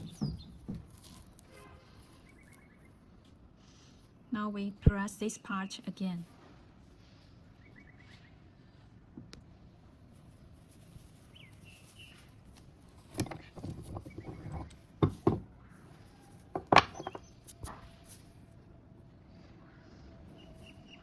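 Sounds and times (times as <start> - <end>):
metal clamp knocks and clicks: 13.1 - 15.5.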